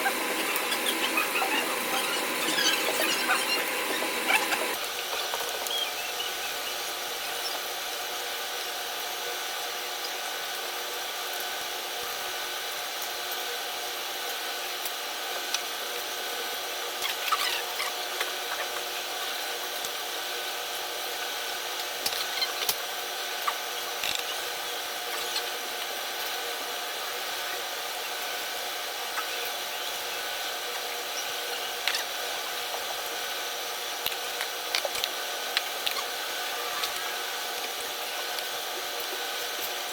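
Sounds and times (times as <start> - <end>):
steady machine whir: 0.0 - 39.9.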